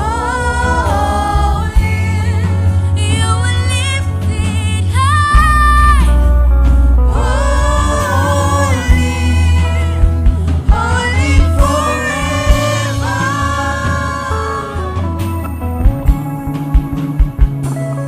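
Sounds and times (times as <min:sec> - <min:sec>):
church choir singing: 0:00.0 - 0:01.8, 0:07.0 - 0:15.3
band playing: 0:00.0 - 0:18.0
bass line: 0:00.0 - 0:18.0.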